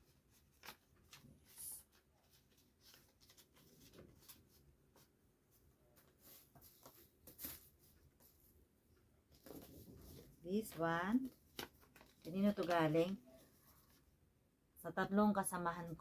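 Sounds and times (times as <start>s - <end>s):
paper rustling and clicking: 0.3s - 5.1s, 9.3s - 13.2s.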